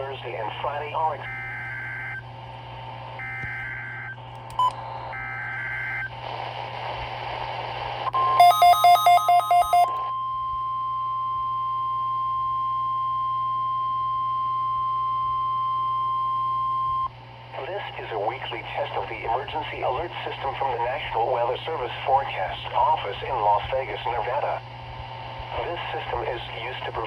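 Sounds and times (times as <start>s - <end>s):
radio hiss: 0.0s - 1.3s, 17.4s - 27.0s
steady attention tone: 8.1s - 10.0s
loud beeps: 8.2s - 9.9s.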